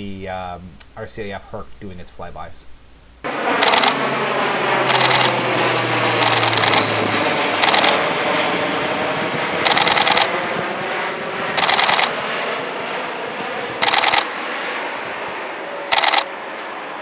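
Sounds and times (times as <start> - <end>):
propeller aircraft passing overhead: 3.2 - 17.0
rapid camera shutter clicks: 3.6 - 4.0, 4.9 - 5.4, 6.2 - 6.9, 7.6 - 8.0, 9.6 - 10.3, 11.6 - 12.1, 13.8 - 14.3, 15.9 - 16.3.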